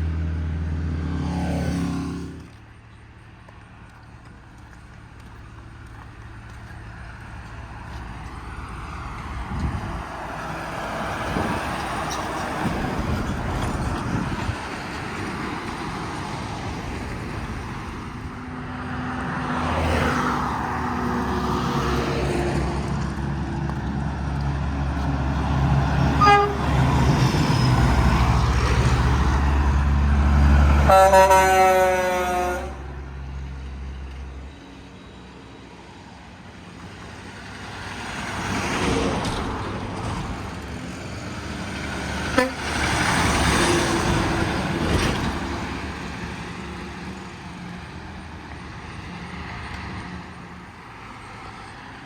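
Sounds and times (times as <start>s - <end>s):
heavy truck engine: 0.0s - 52.0s
vehicles passing: 0.0s - 52.0s
short horn toot: 26.2s - 26.7s, 30.9s - 32.9s.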